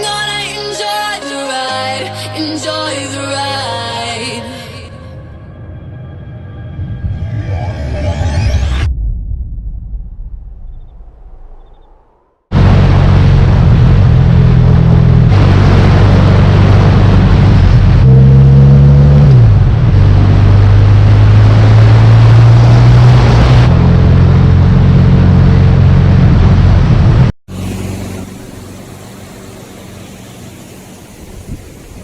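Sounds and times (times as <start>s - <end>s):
motorcycle engines running: 23.6s - 32.0s.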